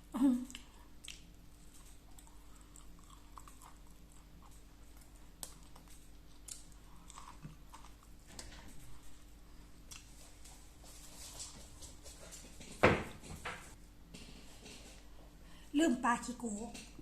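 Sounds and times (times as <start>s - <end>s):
person chewing food: 0.4s - 10.8s.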